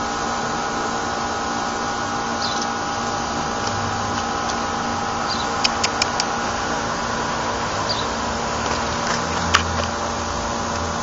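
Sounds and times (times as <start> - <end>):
mechanical hum with steady tones: 0.0 - 11.0.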